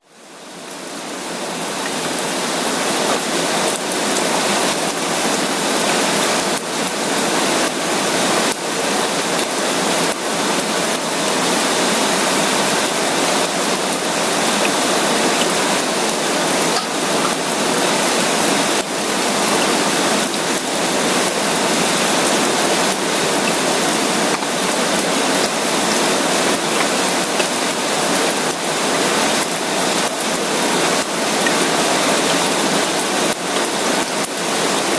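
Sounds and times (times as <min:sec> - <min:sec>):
steady rain hiss: 0:00.0 - 0:34.9.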